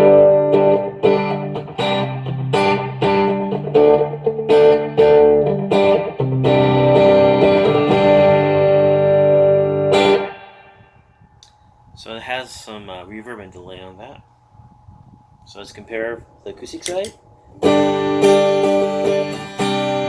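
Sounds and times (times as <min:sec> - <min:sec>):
electric guitar chords with reverb: 0:00.0 - 0:11.0, 0:17.6 - 0:20.0.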